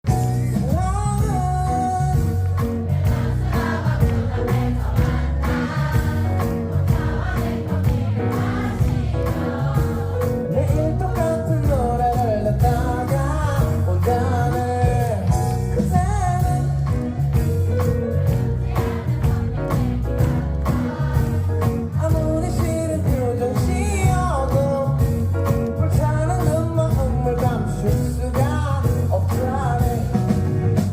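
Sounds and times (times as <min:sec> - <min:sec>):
live band playing: 0:00.0 - 0:30.9
crowd singing along: 0:02.0 - 0:23.6.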